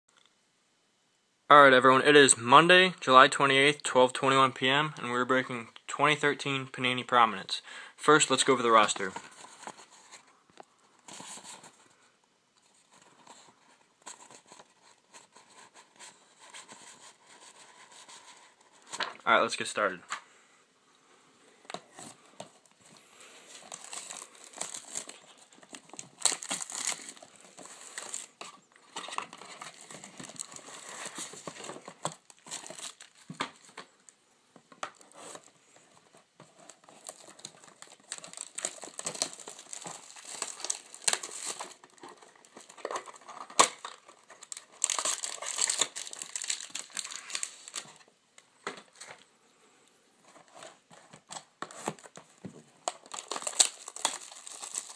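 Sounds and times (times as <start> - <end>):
plastic wrapping crinkling and tearing: 22.7 - 33.8, 36.6 - 48.1, 52.8 - 54.9.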